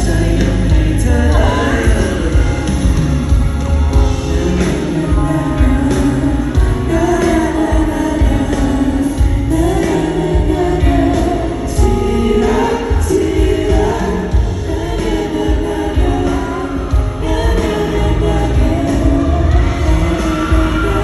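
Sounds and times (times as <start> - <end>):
live pop music: 0.0 - 21.0
person singing: 0.0 - 21.0.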